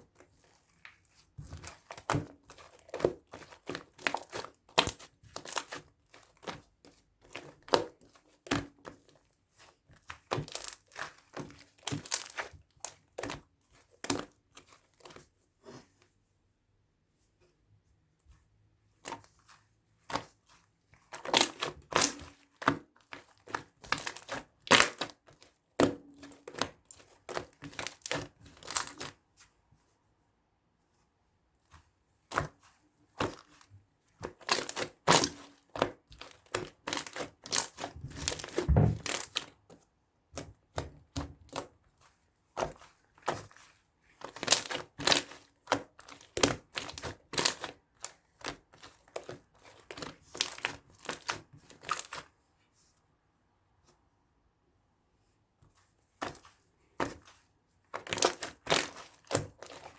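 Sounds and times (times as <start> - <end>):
crinkling handling noise: 32.4 - 39.8, 55.7 - 59.9.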